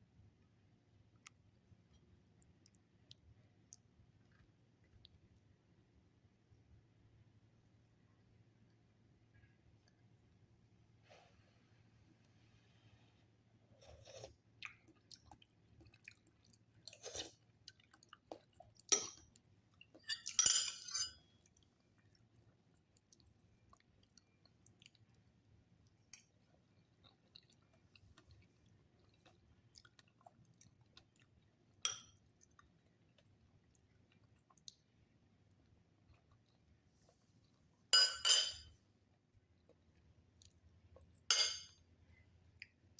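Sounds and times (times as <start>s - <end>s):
quiet chewing: 1.2s - 5.5s, 13.7s - 20.3s, 21.4s - 37.8s.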